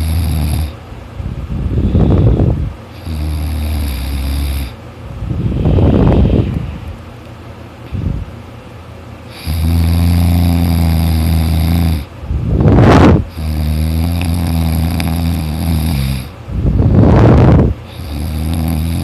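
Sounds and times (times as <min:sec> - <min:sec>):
person snoring loudly: 0:00.0 - 0:00.8, 0:03.0 - 0:04.8, 0:09.3 - 0:12.1, 0:13.2 - 0:16.4, 0:17.0 - 0:19.0.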